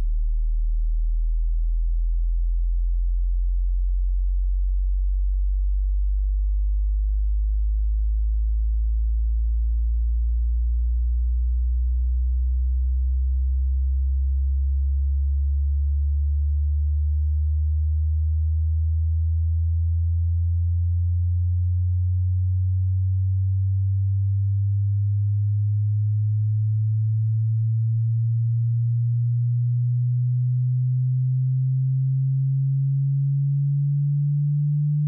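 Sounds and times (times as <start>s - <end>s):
sine tone rising in pitch: 22.3s - 35.0s.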